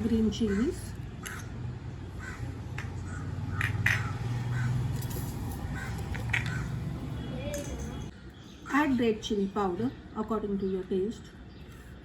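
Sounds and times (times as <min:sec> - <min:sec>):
crows cawing: 0:00.5 - 0:05.0, 0:05.6 - 0:06.9.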